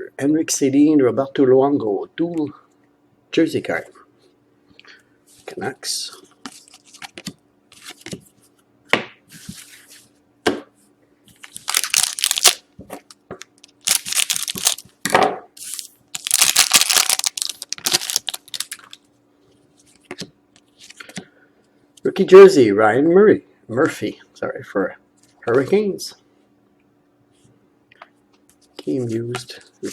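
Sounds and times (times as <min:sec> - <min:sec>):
wrapper tearing and crinkling: 0:11.4 - 0:12.6, 0:13.4 - 0:14.9, 0:15.6 - 0:19.0.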